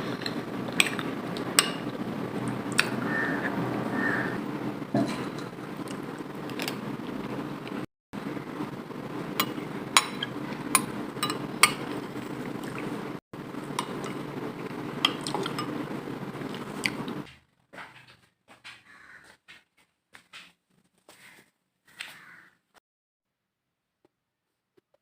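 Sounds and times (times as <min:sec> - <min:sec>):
steady low hum: 0:00.0 - 0:17.3
dishes and cutlery clinking: 0:09.4 - 0:12.8, 0:13.7 - 0:14.2, 0:15.0 - 0:15.8.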